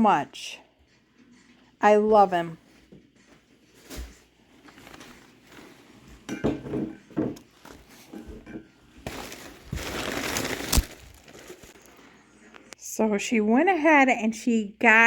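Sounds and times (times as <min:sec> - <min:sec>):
packaging rustling: 0:03.8 - 0:05.8, 0:09.0 - 0:12.0
items clinking and knocking: 0:03.8 - 0:11.9.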